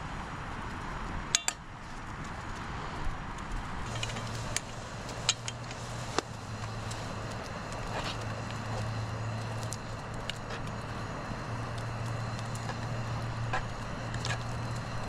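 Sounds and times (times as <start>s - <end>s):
steady hiss: 0.0s - 15.0s
low hum: 3.6s - 15.0s.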